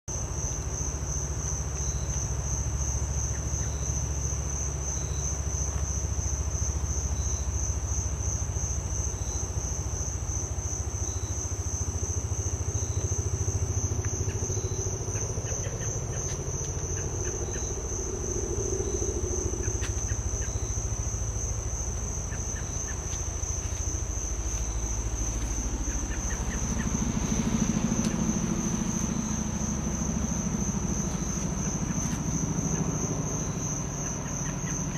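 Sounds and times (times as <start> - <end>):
insects chirring: 0.1 - 34.9
helicopter rotors thudding: 12.0 - 34.9.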